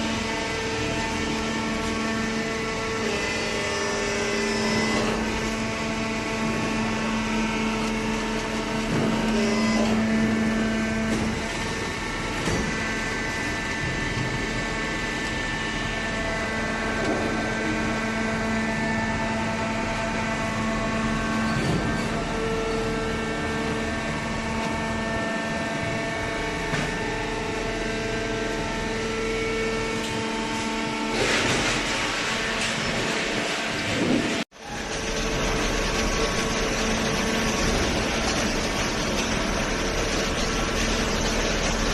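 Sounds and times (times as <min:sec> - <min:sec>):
machine whine: 0:00.0 - 0:41.9
baling machine motor hum: 0:33.2 - 0:41.9.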